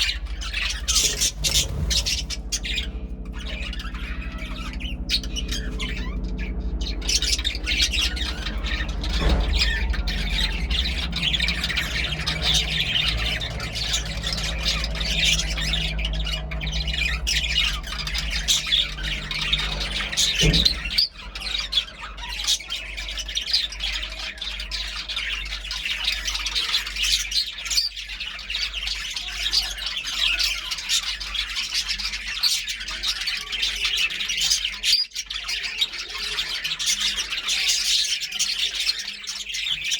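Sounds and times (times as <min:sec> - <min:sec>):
low hum: 0:00.0 - 0:21.7
budgerigars chattering: 0:00.0 - 0:39.9.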